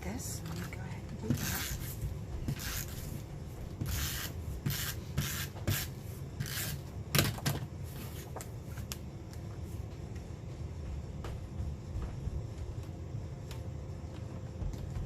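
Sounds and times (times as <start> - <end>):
rasping strokes on paper: 1.3 - 3.2, 3.8 - 6.8.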